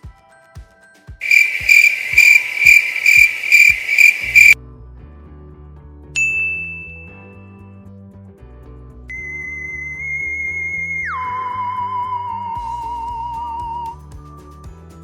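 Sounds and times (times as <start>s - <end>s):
cricket chirping: 1.2s - 4.6s
bright ding: 6.2s - 7.4s.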